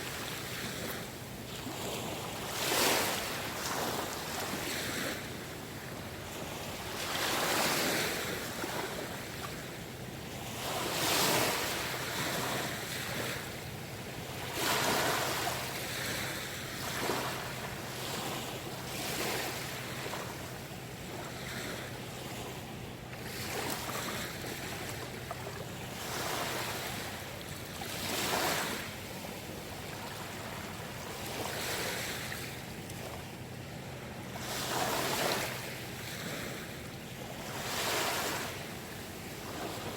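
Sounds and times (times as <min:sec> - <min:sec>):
sea waves washing in: 0:10.3 - 0:22.5.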